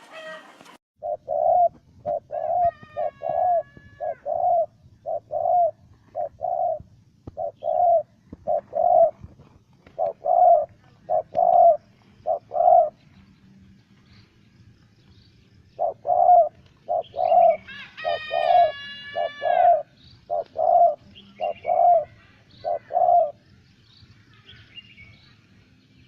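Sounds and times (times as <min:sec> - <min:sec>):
dove cooing: 0:00.0 - 0:13.0, 0:15.7 - 0:23.4.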